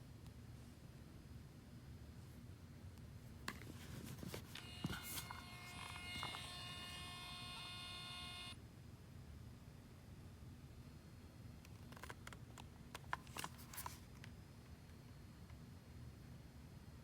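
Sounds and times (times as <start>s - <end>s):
label printer motor whining: 4.5s - 8.6s.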